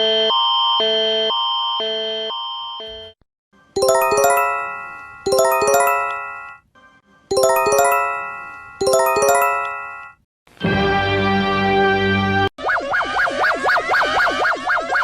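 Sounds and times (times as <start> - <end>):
bell-like alert chime: 3.8 - 6.6, 7.3 - 10.2.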